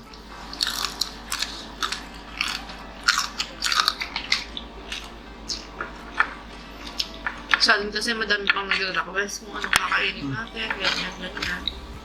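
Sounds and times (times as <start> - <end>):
crunchy chewing and biting: 0.0 - 7.7.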